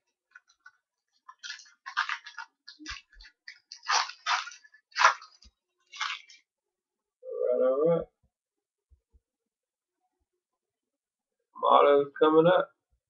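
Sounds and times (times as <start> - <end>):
card wrapper crinkling: 0.1 - 6.4.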